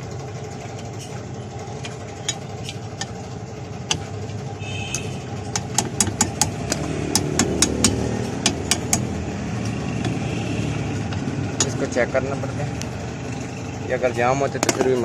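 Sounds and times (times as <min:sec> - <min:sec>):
engine-like running hum: 0:00.0 - 0:15.0
clicks and taps on brake parts: 0:03.8 - 0:04.1, 0:04.9 - 0:10.2.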